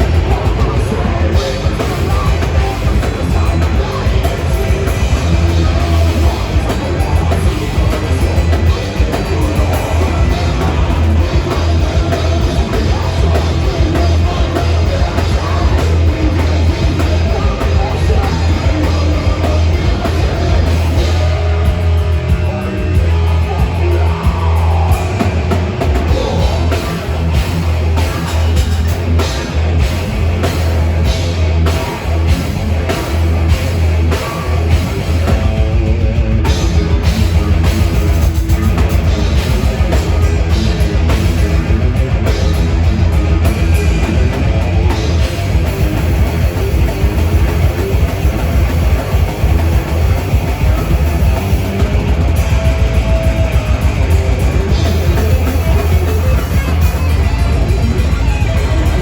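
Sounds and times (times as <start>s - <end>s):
live heavy metal band: 0.0s - 59.0s.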